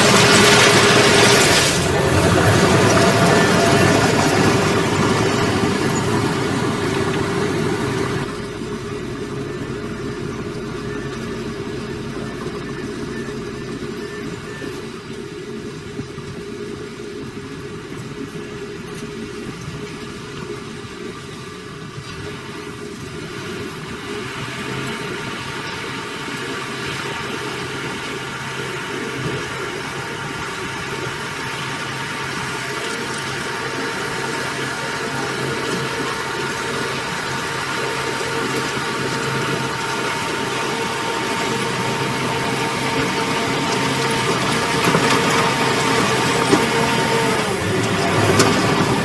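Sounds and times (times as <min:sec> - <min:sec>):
diesel machinery engine whine: 0:00.0 - 0:49.0.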